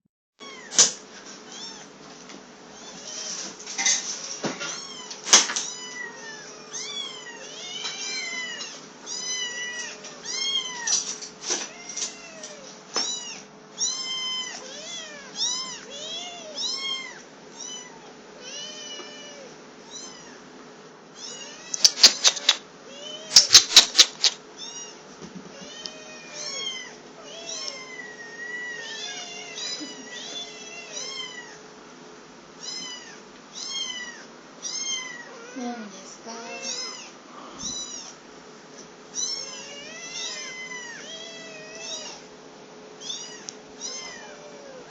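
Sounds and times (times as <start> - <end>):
kittens mewing: 21.2 - 25.0.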